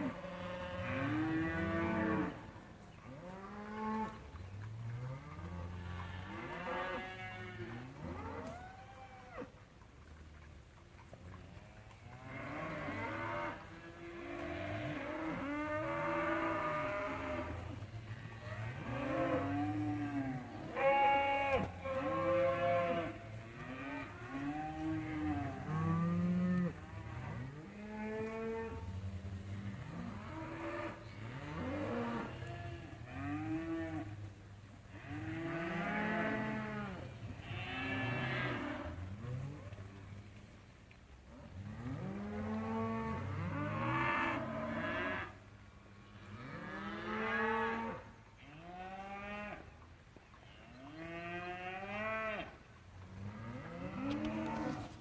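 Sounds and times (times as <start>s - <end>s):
cattle mooing and bawling: 0.0s - 2.5s, 4.9s - 9.5s, 12.2s - 28.9s, 35.0s - 39.8s, 51.0s - 52.6s, 53.3s - 55.0s.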